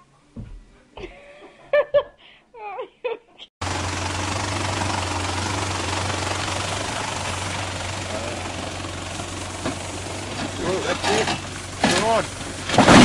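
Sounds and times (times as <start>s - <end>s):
even rushing noise: 3.6s - 12.7s
low engine-like hum: 3.6s - 13.0s.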